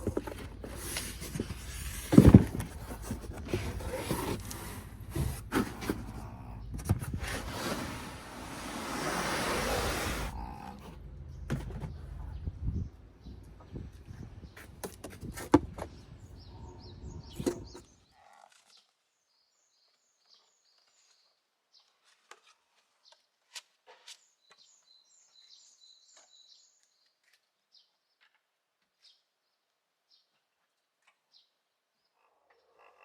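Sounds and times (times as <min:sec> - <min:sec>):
small birds chirping: 0:09.6 - 0:23.4, 0:24.0 - 0:33.0.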